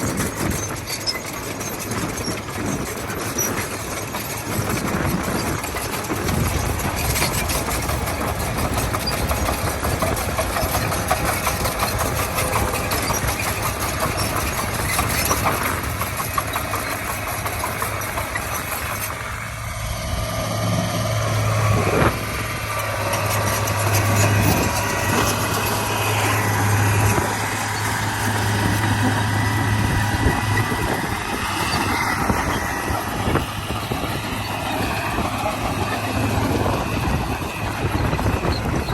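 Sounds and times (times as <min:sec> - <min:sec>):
bulldozer diesel engine clattering: 0:00.0 - 0:38.9
low engine hum: 0:00.0 - 0:38.9.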